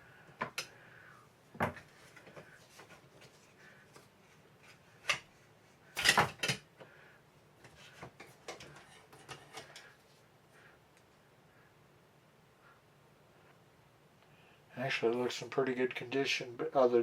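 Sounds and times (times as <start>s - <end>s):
air rifle parts clicking and clattering: 6.0s - 6.7s.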